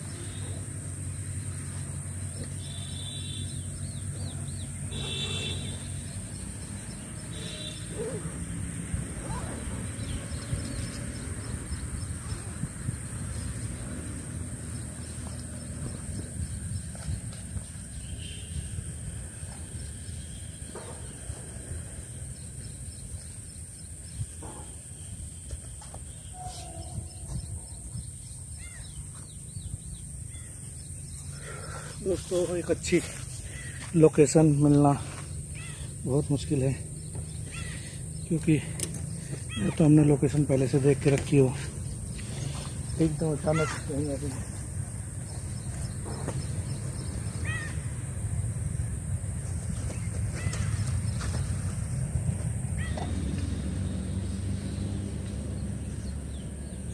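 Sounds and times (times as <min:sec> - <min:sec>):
birds chirping: 0:00.0 - 0:56.9
wind rumble on microphone: 0:08.7 - 0:25.4, 0:26.1 - 0:30.9.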